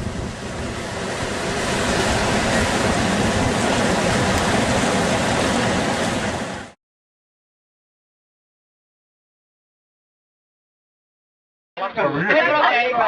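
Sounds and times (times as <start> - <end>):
wind noise on microphone: 0.0 - 6.0.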